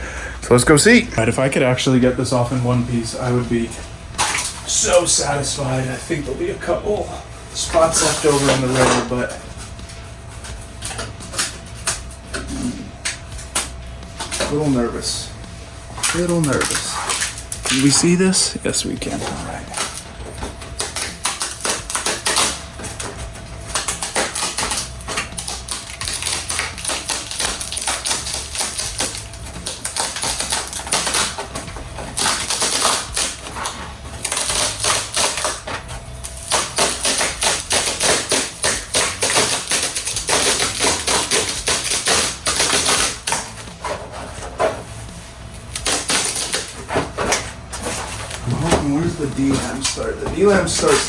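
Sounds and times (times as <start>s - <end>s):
fiberglass tearing crackle: 15.9s - 18.3s, 19.0s - 43.8s, 45.4s - 47.4s.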